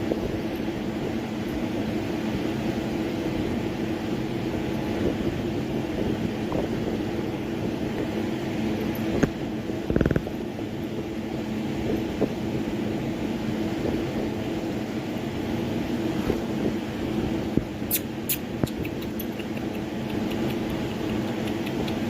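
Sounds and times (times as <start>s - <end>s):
low mechanical hum: 0.0s - 22.0s
sharp click: 17.9s - 22.0s.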